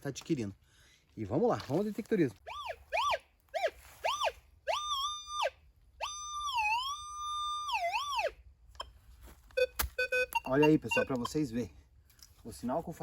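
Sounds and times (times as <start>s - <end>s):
metal detector tone: 2.5s - 11.5s.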